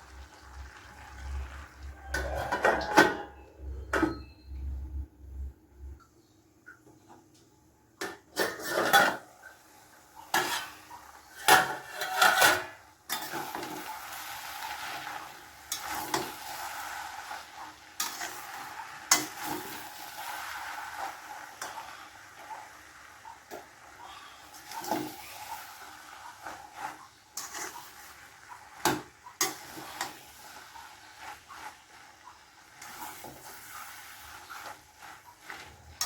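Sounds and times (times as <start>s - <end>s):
food sizzling: 0.0s - 3.0s, 8.4s - 36.0s
spoon clanking in metal pan: 10.2s - 13.9s, 15.1s - 16.5s, 18.0s - 19.9s, 26.4s - 28.0s.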